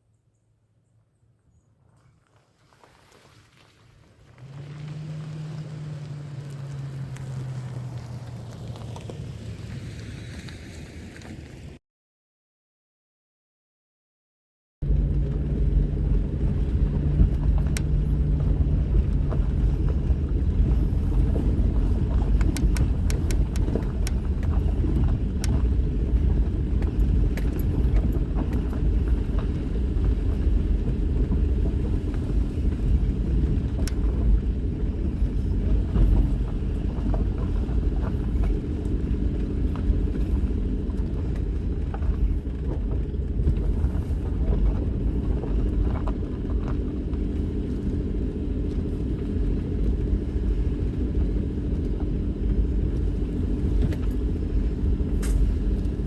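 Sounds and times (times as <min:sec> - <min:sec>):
car driving rumble from inside: 0:04.2 - 0:11.6, 0:14.8 - 0:56.0
light clicks and rattles: 0:14.9 - 0:51.1.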